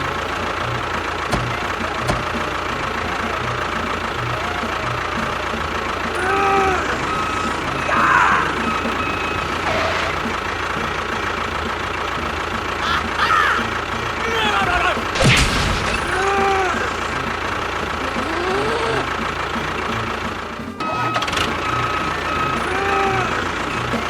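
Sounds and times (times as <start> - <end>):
engine idling with knocking: 0.0 - 24.0
whistle-like glides: 1.6 - 11.6, 20.7 - 24.0.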